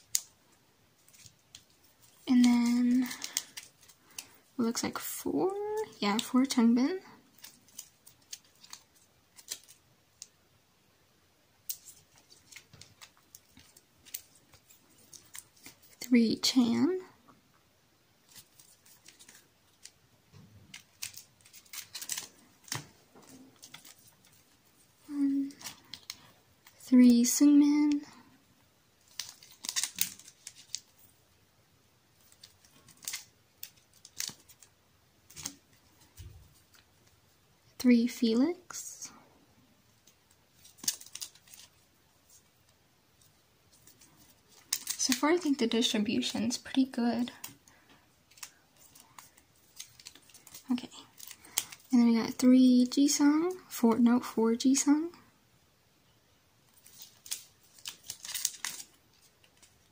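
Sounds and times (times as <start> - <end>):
cards scraping and tapping: 18.3 - 24.4, 29.1 - 31.0, 56.8 - 59.7.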